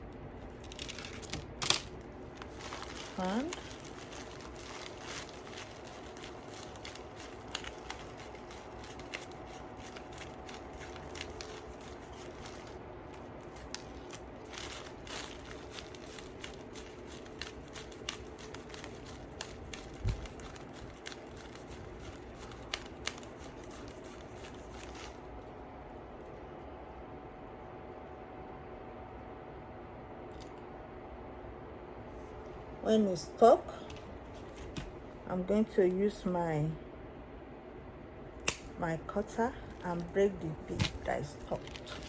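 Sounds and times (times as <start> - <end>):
steady background hum: 0.0 - 42.0.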